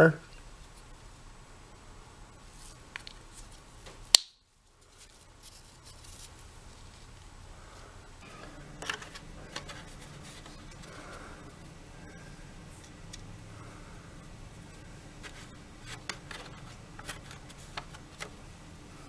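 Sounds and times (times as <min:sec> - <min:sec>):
plastic vacuum parts clicking: 0:08.3 - 0:11.0, 0:15.2 - 0:18.4.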